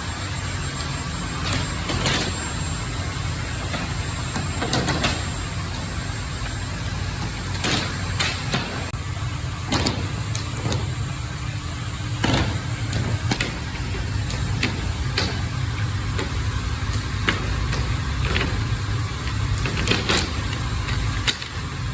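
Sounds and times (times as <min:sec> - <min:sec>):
wrapping machine humming: 0:00.0 - 0:21.9
sharp clicks and knocks: 0:01.4 - 0:02.6, 0:03.5 - 0:05.5, 0:06.4 - 0:09.0, 0:09.6 - 0:11.0, 0:12.2 - 0:21.8.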